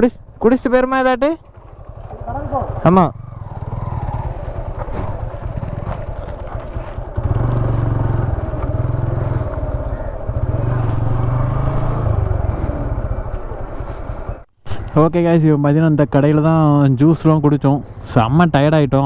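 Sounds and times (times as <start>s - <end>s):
motorcycle engine running: 0.0s - 14.5s
road noise: 0.0s - 18.6s
wind: 0.0s - 19.0s.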